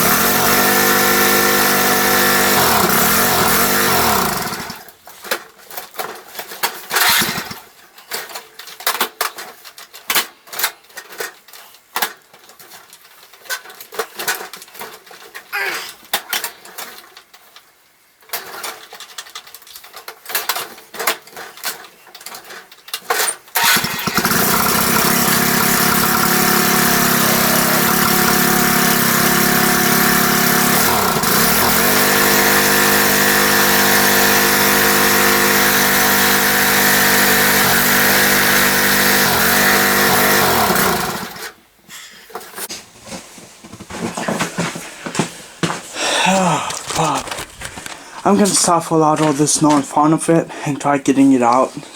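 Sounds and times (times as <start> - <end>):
riding lawn mower engine: 0.0 - 4.9, 6.9 - 7.6, 23.2 - 41.6.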